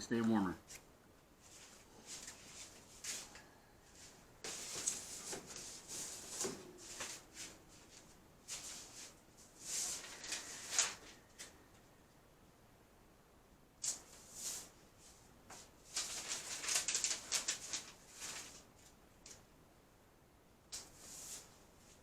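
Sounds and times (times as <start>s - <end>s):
packaging rustling and crinkling: 4.0s - 11.5s, 15.8s - 19.4s.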